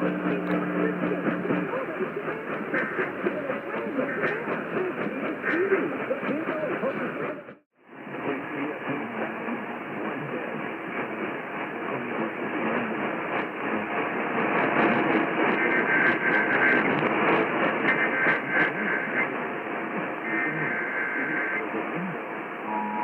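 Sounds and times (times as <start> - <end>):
static crackles: 0.0 - 7.2, 12.6 - 23.0
radio static hiss: 0.0 - 23.0
faint steady whistle: 20.2 - 23.0.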